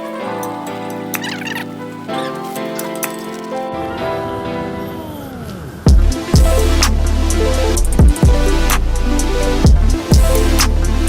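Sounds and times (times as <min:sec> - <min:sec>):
electronic music with heavy bass: 0:05.9 - 0:11.0.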